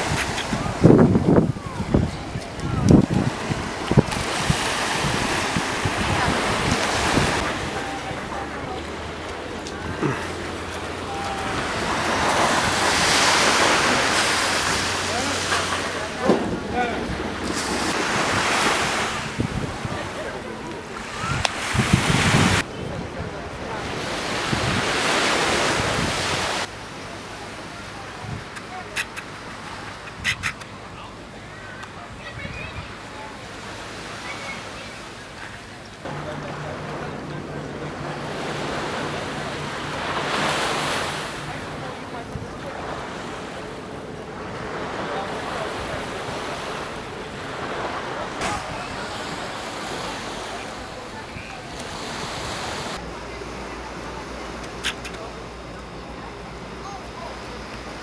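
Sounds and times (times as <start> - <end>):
wind buffeting microphone: 0.0 - 26.7
surf washing onto beach: 0.0 - 58.0.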